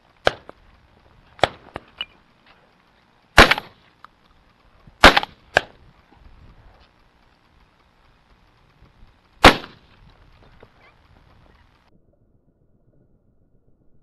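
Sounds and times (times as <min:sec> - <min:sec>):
shotgun shots: 0:00.2 - 0:00.6, 0:01.4 - 0:01.8, 0:03.4 - 0:03.8, 0:05.0 - 0:05.8, 0:09.4 - 0:09.9.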